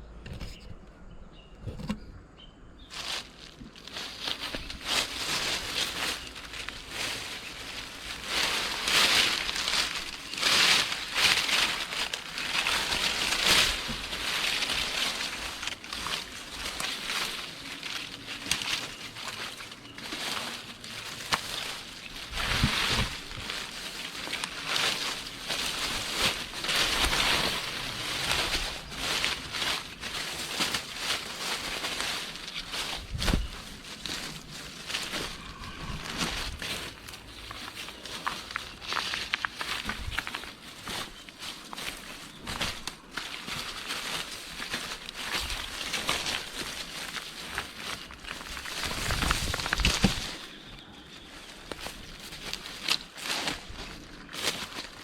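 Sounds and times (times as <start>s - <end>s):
footsteps on stones and leaves: 2.8s - 55.0s.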